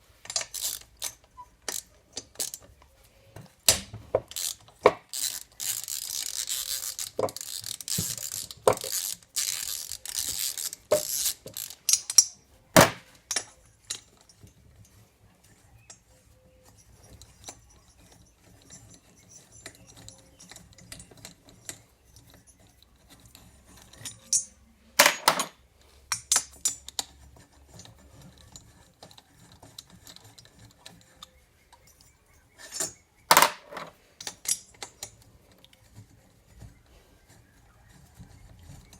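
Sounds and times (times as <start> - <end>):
clatter of metal parts: 0.1 - 38.9.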